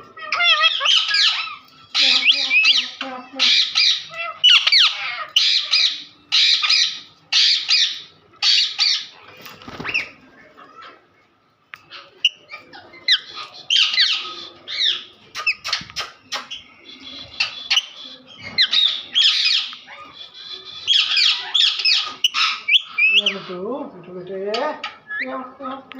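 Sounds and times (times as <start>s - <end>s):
parrots screeching: 0.0s - 11.1s, 11.8s - 23.6s.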